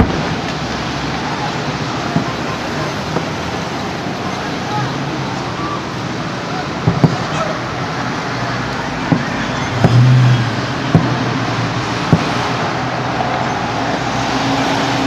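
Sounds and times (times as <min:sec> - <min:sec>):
distant fireworks bangs: 0:00.0 - 0:04.3, 0:06.6 - 0:15.0
outdoor background noise: 0:00.0 - 0:15.0.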